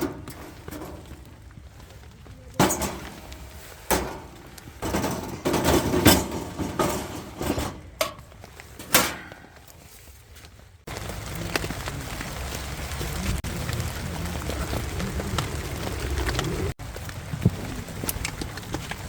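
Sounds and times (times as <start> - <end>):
objects knocking and clattering: 0.0 - 9.8.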